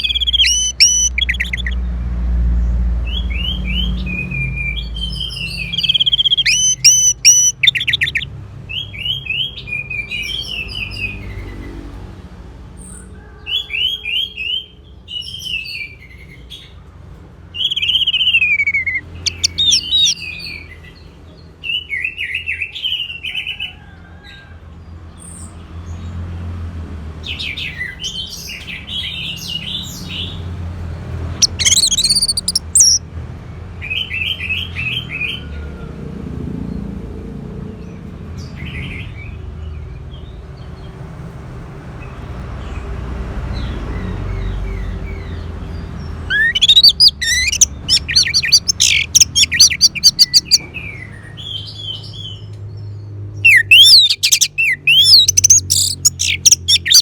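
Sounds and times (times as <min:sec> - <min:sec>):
thrush singing whistled notes: 0:00.0 - 0:01.9, 0:03.1 - 0:11.0, 0:17.6 - 0:20.7, 0:31.3 - 0:33.0, 0:46.2 - 0:52.4, 0:53.4 - 0:57.0.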